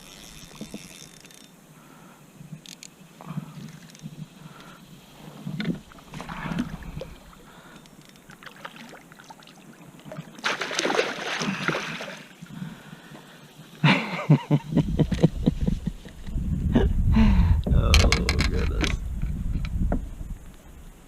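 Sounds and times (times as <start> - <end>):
water splashing around kayak: 3.1 - 13.9.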